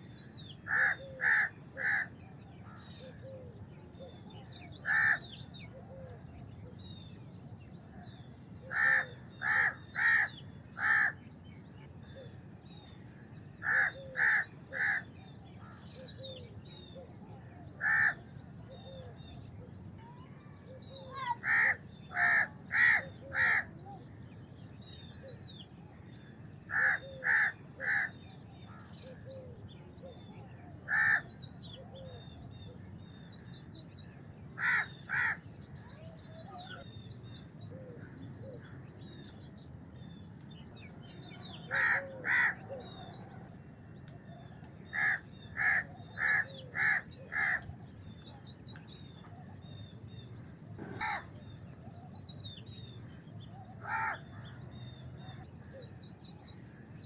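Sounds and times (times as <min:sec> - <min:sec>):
small birds chirping: 0:00.0 - 0:57.0
crows cawing: 0:00.6 - 0:02.2, 0:04.8 - 0:05.4, 0:08.7 - 0:11.2, 0:13.6 - 0:15.1, 0:17.8 - 0:18.3, 0:21.0 - 0:23.8, 0:26.7 - 0:28.2, 0:30.9 - 0:31.3, 0:34.5 - 0:35.5, 0:41.6 - 0:42.9, 0:44.9 - 0:47.7, 0:50.8 - 0:51.4, 0:53.8 - 0:54.4.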